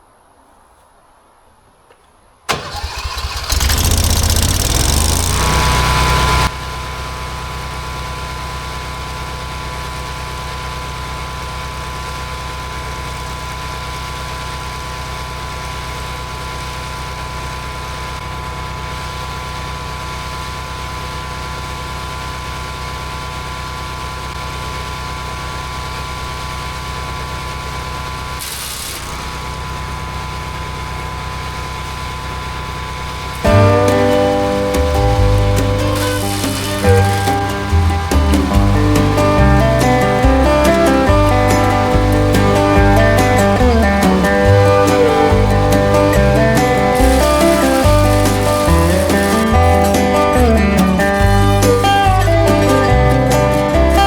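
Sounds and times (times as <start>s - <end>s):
wood chipper running: 2.5s - 54.0s
material passing through chipper: 33.3s - 51.0s.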